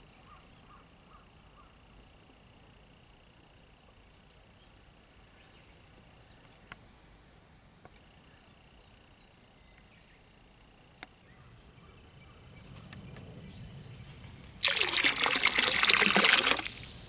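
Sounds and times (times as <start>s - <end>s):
faint bird chirps: 0.0s - 1.9s
water pouring and splashing: 14.6s - 17.0s.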